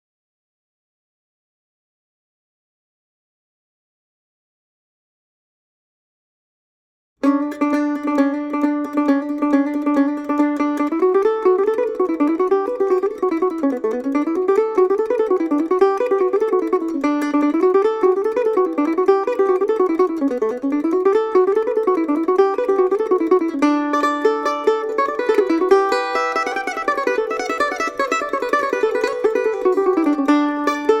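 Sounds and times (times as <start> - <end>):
mando-guitar fast riff: 7.2 - 31.0.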